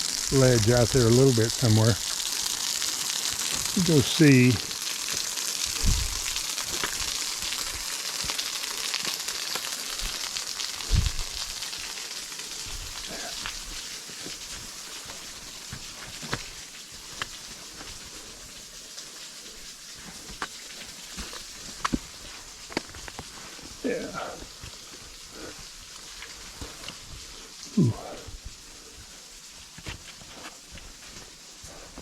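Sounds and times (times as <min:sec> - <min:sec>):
waterfall hissing: 0:00.0 - 0:32.0
footsteps on rock: 0:05.8 - 0:08.4, 0:13.4 - 0:17.9, 0:20.1 - 0:23.7.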